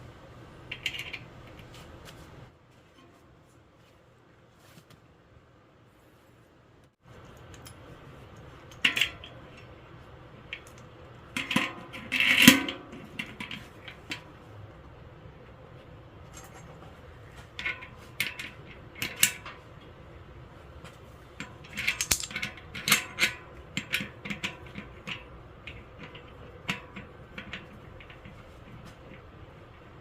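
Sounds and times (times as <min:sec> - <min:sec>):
small metal parts clinking: 0:21.7 - 0:22.9.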